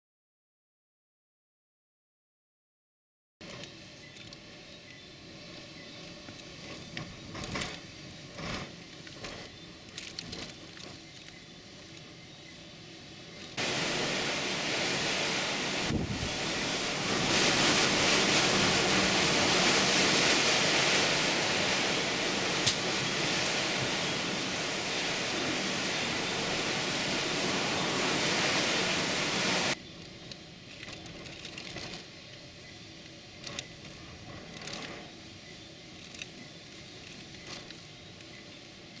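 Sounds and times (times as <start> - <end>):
wind blowing hard: 12.7 - 29.8.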